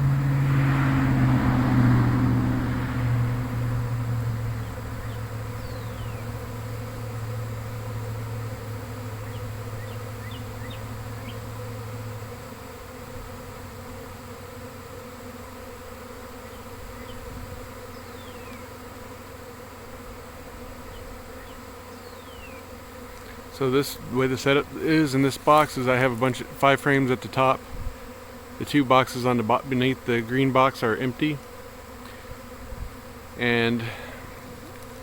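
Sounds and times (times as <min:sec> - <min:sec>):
steady low hum: 0:00.0 - 0:13.6, 0:32.0 - 0:35.0
bee swarm buzzing: 0:00.0 - 0:35.0
single bee buzzing past: 0:00.0 - 0:35.0.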